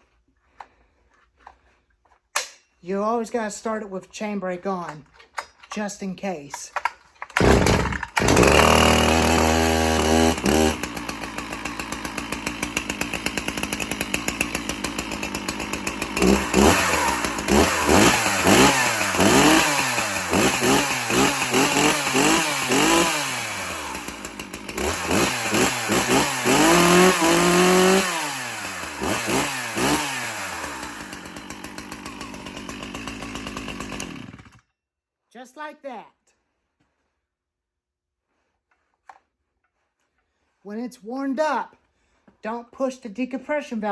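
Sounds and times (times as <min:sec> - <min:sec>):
chainsaw revving and idling: 0:07.2 - 0:34.6.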